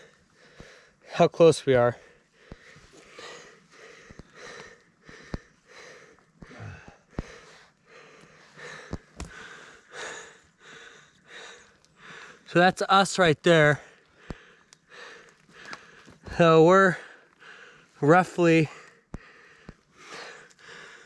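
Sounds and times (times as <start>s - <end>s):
person breathing hard: 0.0s - 1.1s, 1.9s - 12.5s, 13.7s - 16.3s, 16.9s - 18.0s, 18.6s - 21.0s
faint clicks: 11.6s - 12.0s, 14.0s - 16.2s.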